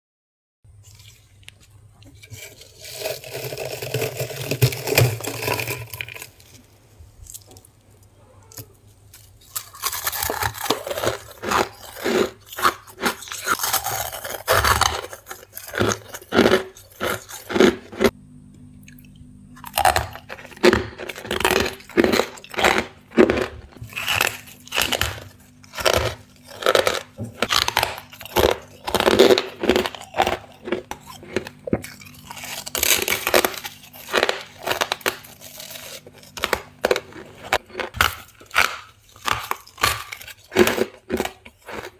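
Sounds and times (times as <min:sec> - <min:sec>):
continuous scraping: 0:00.8 - 0:18.2
chewing crisp frost: 0:07.2 - 0:18.1, 0:18.8 - 0:41.9.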